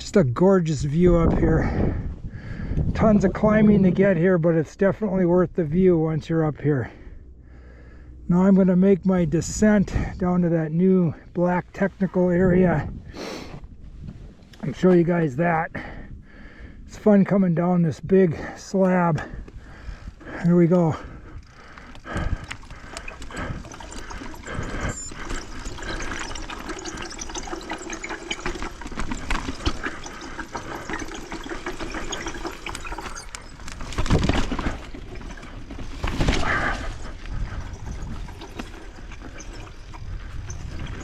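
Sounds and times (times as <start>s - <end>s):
bike jolts: 18.4s - 41.0s
bike rattling: 19.2s - 41.0s.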